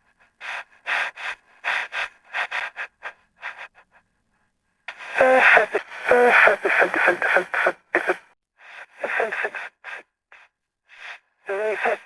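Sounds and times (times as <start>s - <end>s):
person sobbing: 4.9s - 8.2s.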